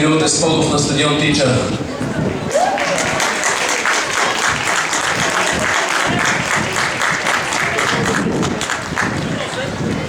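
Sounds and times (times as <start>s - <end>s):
crowd applauding: 2.5s - 9.8s.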